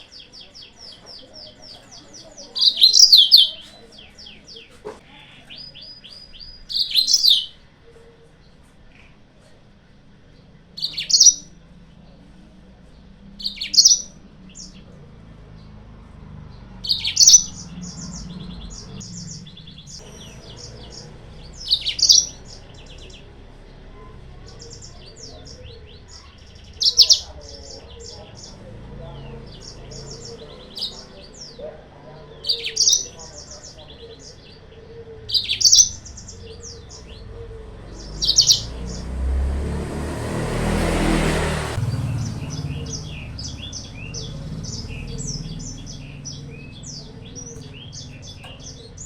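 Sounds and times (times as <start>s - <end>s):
canary fast trills: 0.0s - 8.2s, 10.7s - 12.3s, 13.0s - 39.5s
canary chirping phrases: 0.0s - 49.0s.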